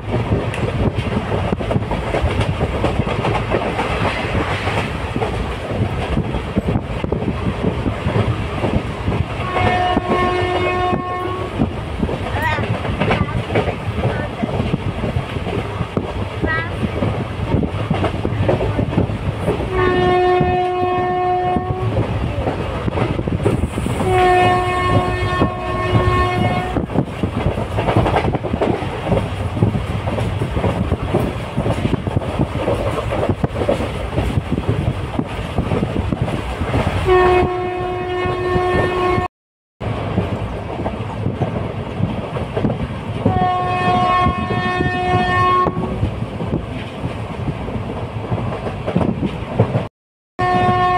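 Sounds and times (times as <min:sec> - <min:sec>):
train wheels rumbling on rails: 0:00.0 - 0:50.9
train horn blasts: 0:09.4 - 0:11.6, 0:19.7 - 0:22.0, 0:24.0 - 0:26.9, 0:37.1 - 0:39.3, 0:43.2 - 0:45.9, 0:50.4 - 0:50.9.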